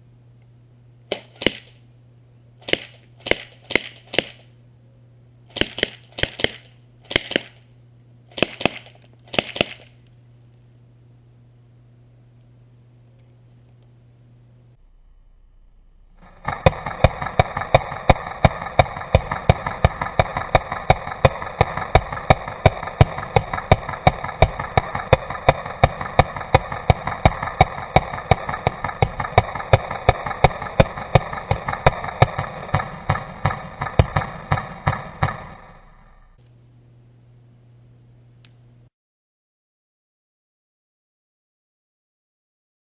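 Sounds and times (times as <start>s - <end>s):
airsoft rifle firing: 1.1s - 1.8s, 2.6s - 4.5s, 5.5s - 7.7s, 8.3s - 10.0s, 16.2s - 35.8s
steady whirring: 12.4s - 36.6s.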